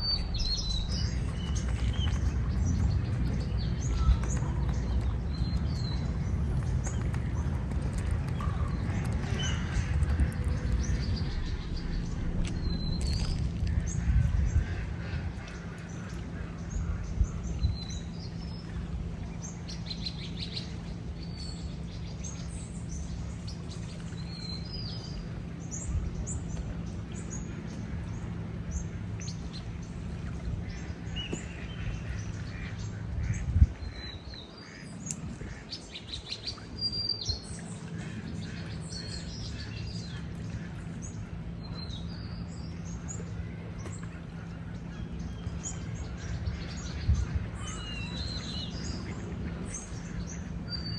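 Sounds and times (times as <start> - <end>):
small birds chirping: 0.0 - 14.8
steady low rumble: 0.0 - 50.9.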